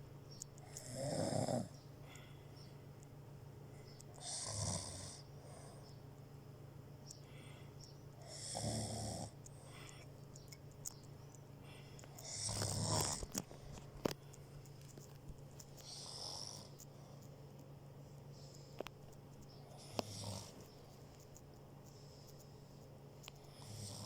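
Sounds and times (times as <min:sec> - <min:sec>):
steady low hum: 0:00.0 - 0:24.0
person snoring: 0:00.6 - 0:01.7, 0:04.2 - 0:05.8, 0:08.2 - 0:09.4, 0:12.2 - 0:13.3, 0:15.8 - 0:16.8, 0:19.8 - 0:20.6, 0:23.5 - 0:24.0.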